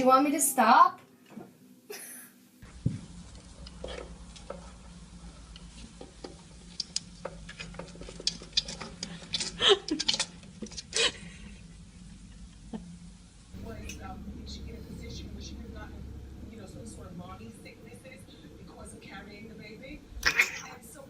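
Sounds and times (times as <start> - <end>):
light clicks taps and scrapes: 5.5 - 11.0
low hum: 10.6 - 21.0.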